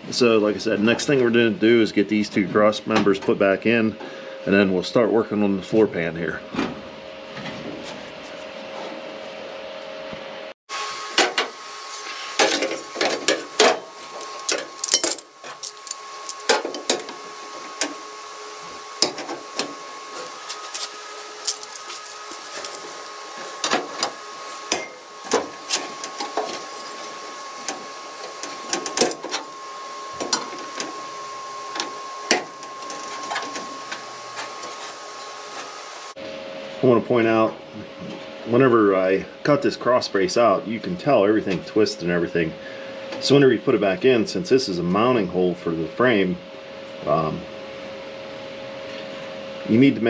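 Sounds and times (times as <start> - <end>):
steady high-pitched hum: 11.1 - 36.2
tools and sheet metal clanking: 11.1 - 36.2.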